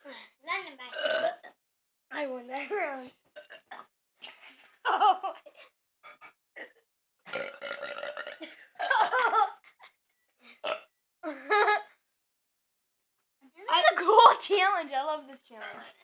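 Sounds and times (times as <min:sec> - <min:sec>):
child burping: 0:00.9 - 0:01.6, 0:03.4 - 0:03.9, 0:06.6 - 0:08.5
children laughing: 0:04.2 - 0:05.7, 0:08.4 - 0:09.9.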